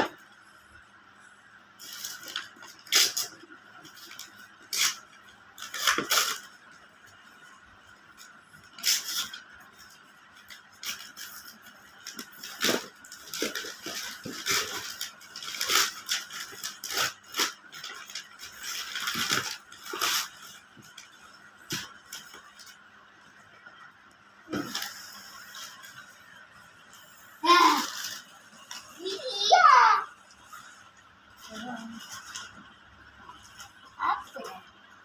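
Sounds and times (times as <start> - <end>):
packaging crinkling and tearing: 1.8 - 6.6, 10.5 - 22.8.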